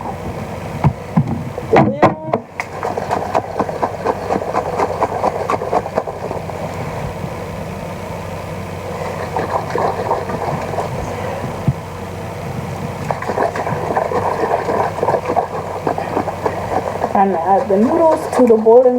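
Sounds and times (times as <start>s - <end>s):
steady low hum: 0.0s - 18.9s.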